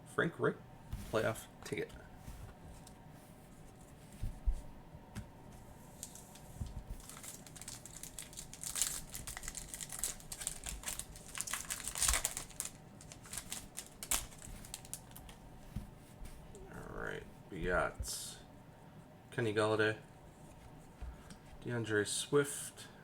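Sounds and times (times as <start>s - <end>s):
soft thump: 4.2s - 5.3s
foil wrapper crinkling: 6.0s - 15.4s.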